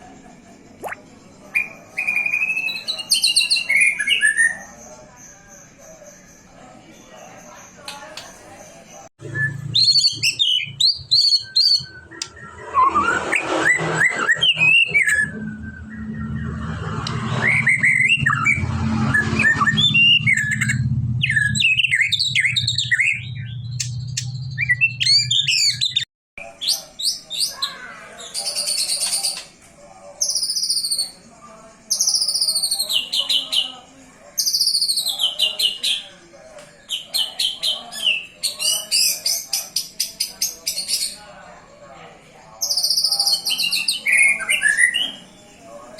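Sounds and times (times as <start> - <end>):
songbird singing varied whistles: 9.2 - 13.2.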